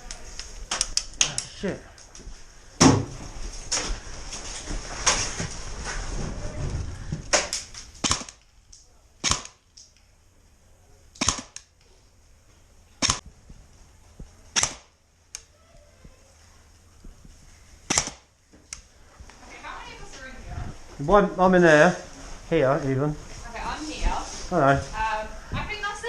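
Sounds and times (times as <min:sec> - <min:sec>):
rustling: 0:00.0 - 0:10.1, 0:11.4 - 0:26.0
airsoft gun shots: 0:07.3 - 0:08.4, 0:09.2 - 0:09.6, 0:11.2 - 0:11.6, 0:13.0 - 0:13.3, 0:14.5 - 0:15.0, 0:17.9 - 0:18.3.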